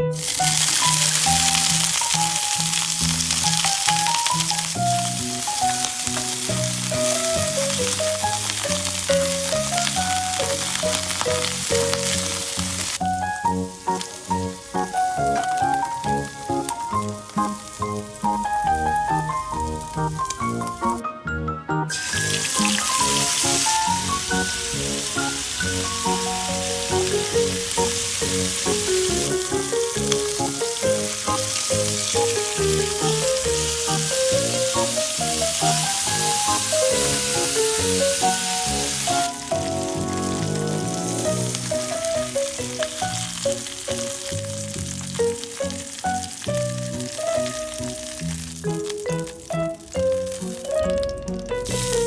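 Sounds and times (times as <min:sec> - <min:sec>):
food sizzling in a pan: 0:00.0 - 0:21.0, 0:21.9 - 0:52.0
background music: 0:00.0 - 0:52.0.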